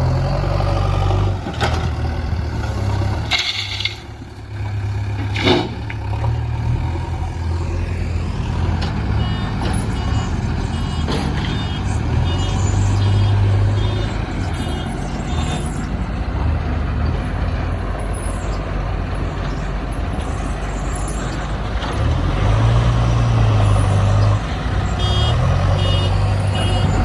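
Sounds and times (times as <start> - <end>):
heavy diesel engines running: 0.0 - 27.0
reversing alarm beeps: 9.2 - 16.0, 25.0 - 27.0.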